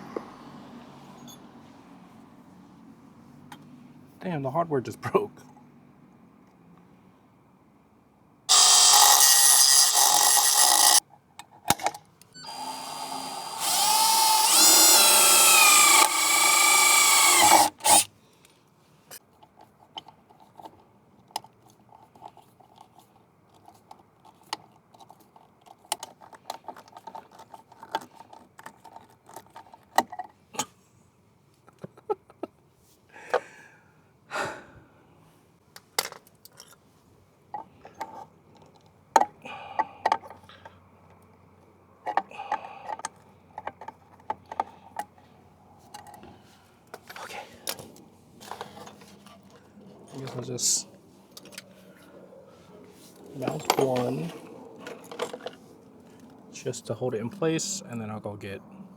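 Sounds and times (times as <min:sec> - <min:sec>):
power drill whining: 0:08.5 - 0:11.0, 0:12.4 - 0:18.1.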